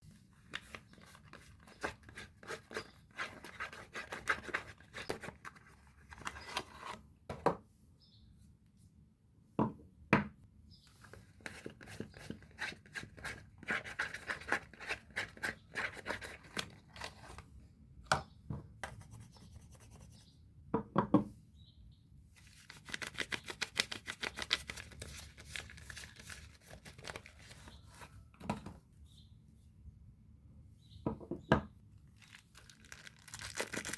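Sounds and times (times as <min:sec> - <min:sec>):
wrappers crinkling and tearing: 0:22.5 - 0:27.7, 0:32.2 - 0:33.9.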